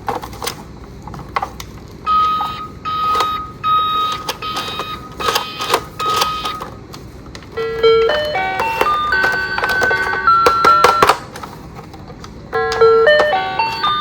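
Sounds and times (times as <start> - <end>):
toy electronic beeping: 2.1 - 6.8, 7.6 - 11.3, 12.5 - 14.0
sharp plastic clicks: 4.1 - 7.5.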